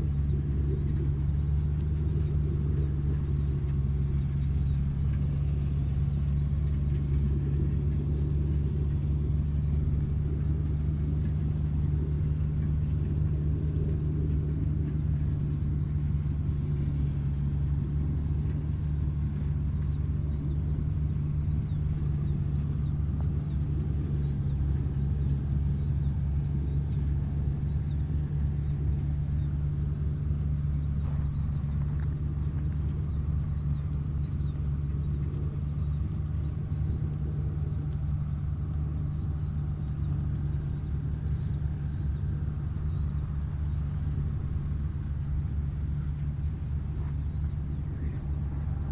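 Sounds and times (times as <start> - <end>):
insect trill: 0.0 - 48.9
tractor engine droning: 0.0 - 48.9.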